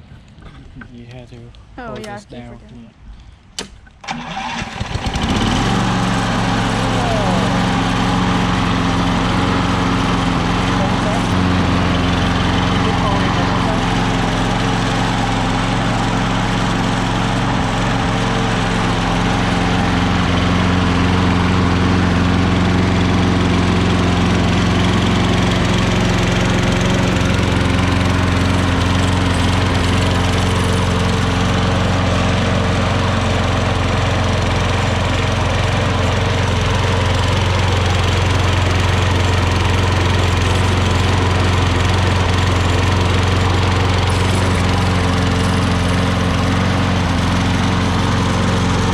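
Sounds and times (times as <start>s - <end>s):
lawn mower engine running: 3.9s - 48.9s.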